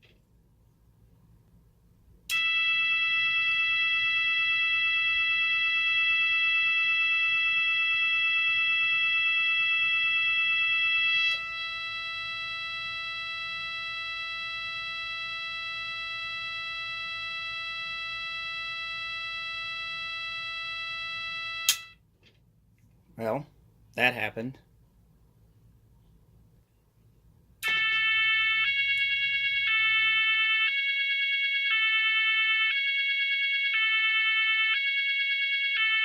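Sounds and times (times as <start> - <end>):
fire alarm steady electronic tone: 2.3 - 22.0, 27.6 - 36.0.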